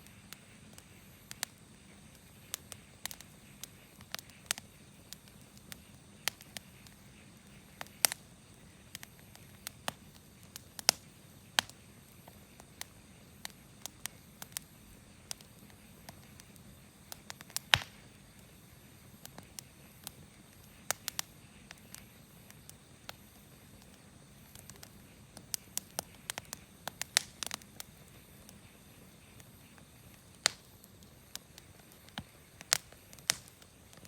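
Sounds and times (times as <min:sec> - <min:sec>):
campfire crackling and popping: 0:00.0 - 0:34.0
faint steady hiss: 0:00.0 - 0:34.0.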